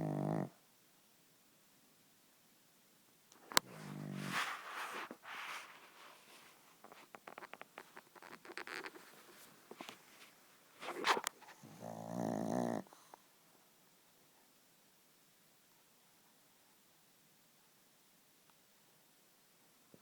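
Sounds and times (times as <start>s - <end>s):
dog snoring: 0.0s - 0.5s, 3.6s - 5.1s, 10.8s - 13.2s
dog snorting: 3.5s - 5.9s, 10.8s - 13.2s.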